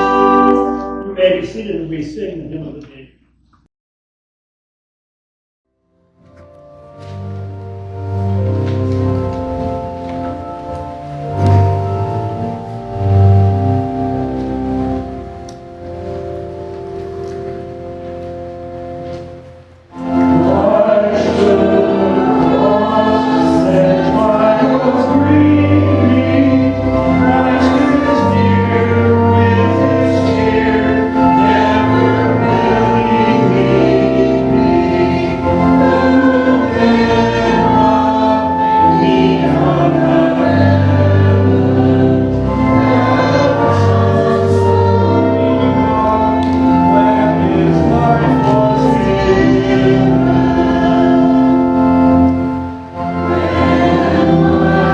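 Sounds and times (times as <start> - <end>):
choir singing a hymn: 0.0 - 1.4, 10.0 - 16.2, 19.9 - 54.9
instrumental accompaniment: 0.0 - 2.8, 6.0 - 54.9.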